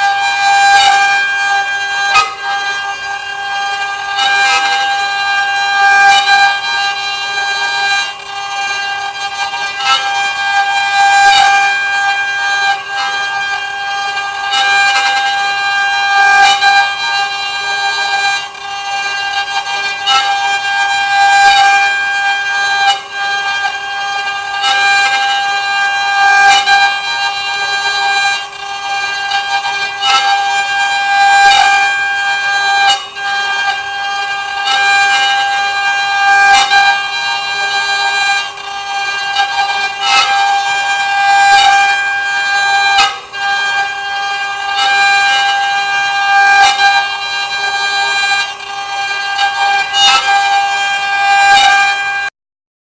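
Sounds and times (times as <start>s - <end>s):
router spindle whining: 0.0s - 52.3s.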